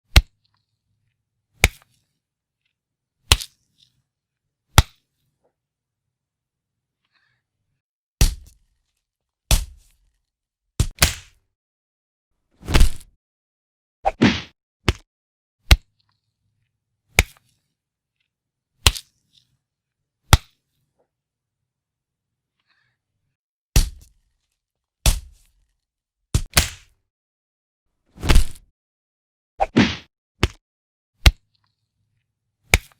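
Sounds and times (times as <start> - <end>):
punch sound effects: 12.6 - 13.1, 14.1 - 14.6, 28.2 - 28.6, 29.6 - 30.1.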